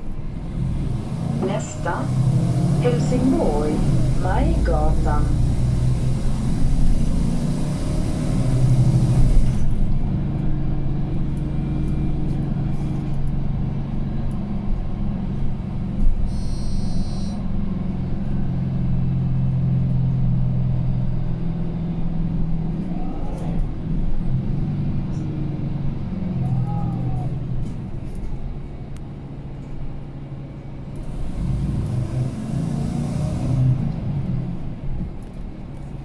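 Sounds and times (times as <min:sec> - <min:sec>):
bus engine droning: 0:00.0 - 0:36.0.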